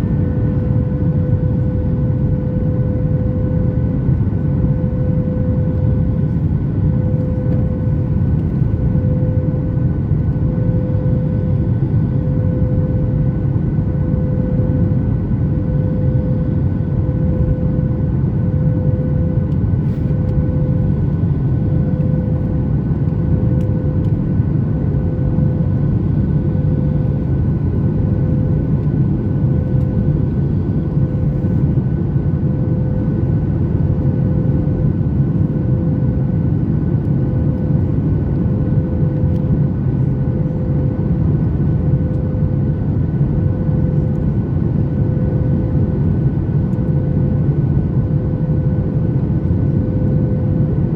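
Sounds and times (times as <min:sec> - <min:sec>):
aircraft cabin engine rumble: 0:00.0 - 0:50.9.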